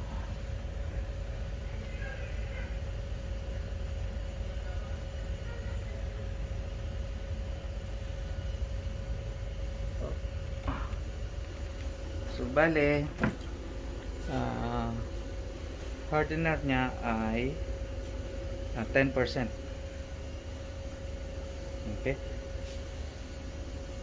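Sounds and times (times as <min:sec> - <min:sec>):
machinery rumble and hum: 0:00.0 - 0:24.0
faint knocks: 0:13.1 - 0:13.6.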